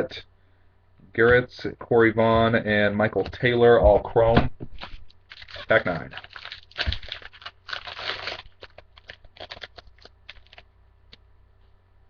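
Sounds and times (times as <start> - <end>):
cards clicking and rustling: 4.8 - 10.6
wrapper tearing and crinkling: 4.8 - 10.7.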